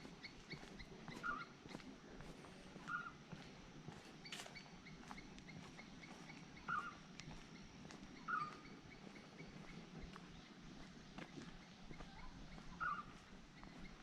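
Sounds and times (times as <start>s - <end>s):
outdoor background noise: 0.0s - 14.0s
bird chirping: 4.2s - 14.0s.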